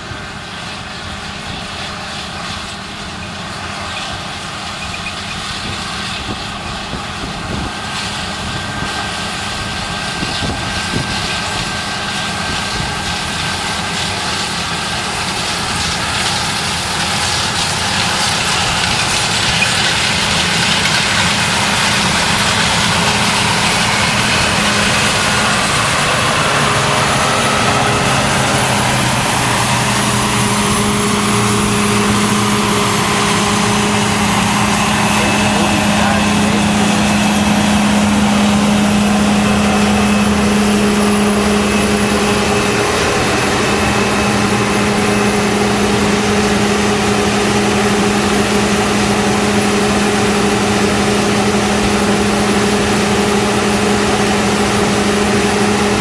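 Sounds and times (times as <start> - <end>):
combine harvester drone: 0.0 - 56.0.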